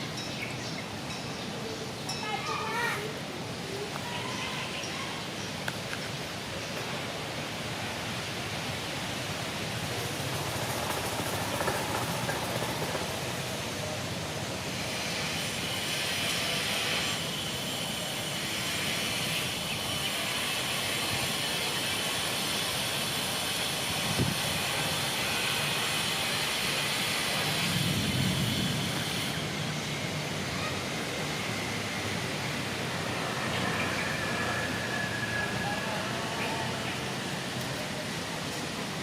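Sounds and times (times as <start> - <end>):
heavy wind rushing: 26.1 - 35.6.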